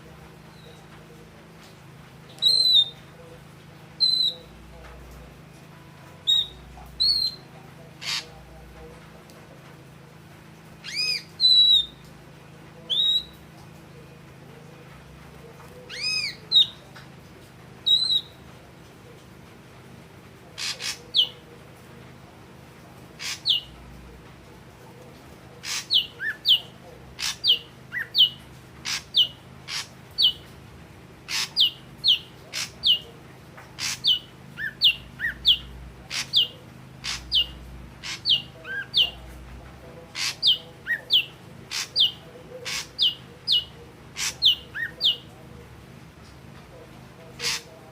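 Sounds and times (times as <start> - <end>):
faint low hum: 0.0 - 47.9
bird calling: 2.3 - 3.4, 6.2 - 8.5, 10.8 - 12.1, 12.8 - 13.5, 15.7 - 17.0, 20.5 - 21.5, 23.1 - 23.8, 25.6 - 30.5, 31.2 - 33.1, 33.8 - 39.4, 40.1 - 45.4, 47.2 - 47.9.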